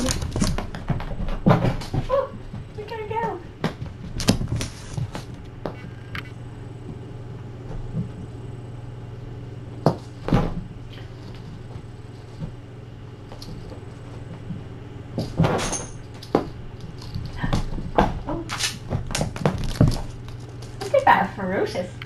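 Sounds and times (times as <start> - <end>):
knocks and thumps: 0.0 - 5.8
steady low hum: 0.0 - 22.0.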